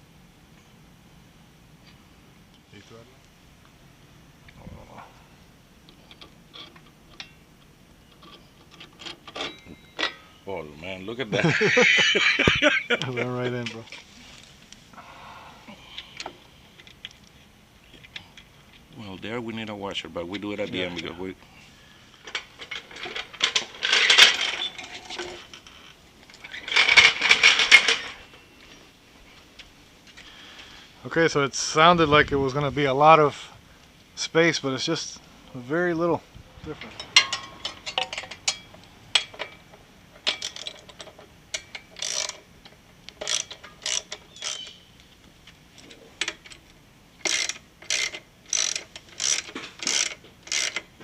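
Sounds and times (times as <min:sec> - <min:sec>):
metal hand tools clicking: 0:40.2 - 0:42.4, 0:47.2 - 0:50.9.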